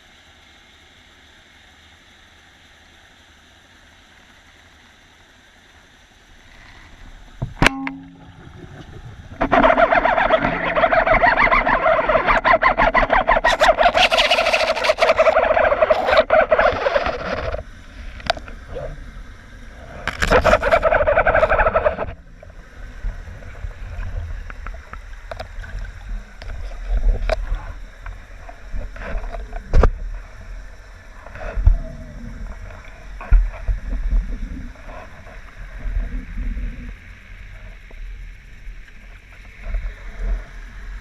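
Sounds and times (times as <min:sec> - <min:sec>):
water bubbling and gurgling: 0:06.8 - 0:41.0
clicks and knocks: 0:07.4 - 0:09.5.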